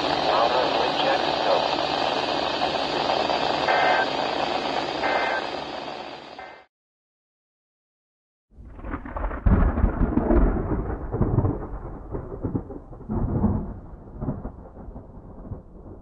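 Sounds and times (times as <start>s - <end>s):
thunder rumbling and cracking: 8.6s - 16.0s.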